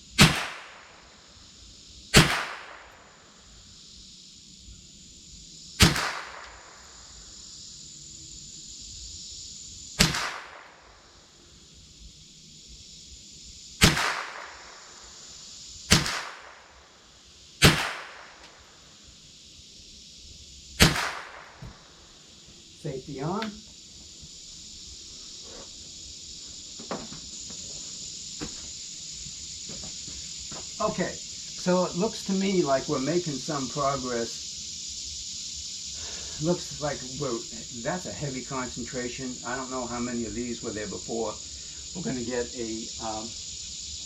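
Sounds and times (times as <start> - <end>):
rifle shots: 0.2 - 1.0, 2.1 - 3.0, 5.8 - 6.6, 10.0 - 10.8, 13.8 - 14.7, 15.9 - 16.6, 17.6 - 18.4, 20.8 - 21.6.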